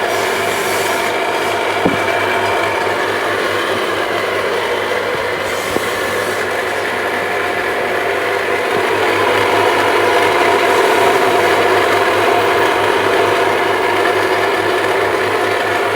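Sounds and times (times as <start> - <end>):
electric drill boring wood: 0.0 - 13.7.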